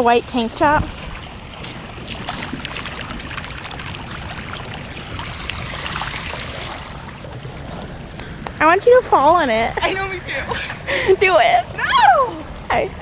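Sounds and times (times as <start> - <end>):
running water in ditch: 0.0 - 13.0
small splashes and drips: 0.3 - 9.9.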